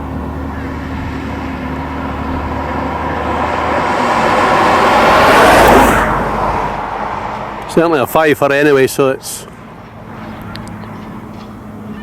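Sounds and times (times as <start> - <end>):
vehicle passing close by: 0.0 - 8.8
low engine hum: 0.0 - 12.0.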